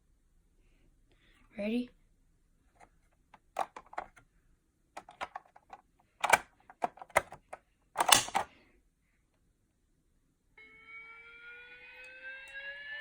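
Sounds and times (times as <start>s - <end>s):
fire alarm pull station clicking: 6.2s - 7.4s, 8.0s - 8.5s.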